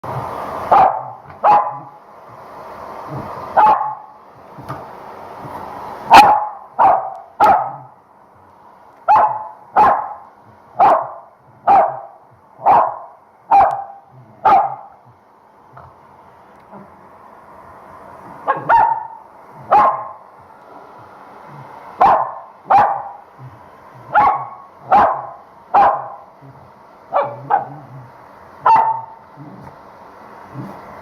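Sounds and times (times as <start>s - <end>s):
dog barking: 0.7s - 2.0s, 3.6s - 4.1s, 6.1s - 7.9s, 9.1s - 10.2s, 10.8s - 15.0s, 18.4s - 20.2s, 22.0s - 23.2s, 24.1s - 26.2s, 27.1s - 27.9s, 28.6s - 29.2s.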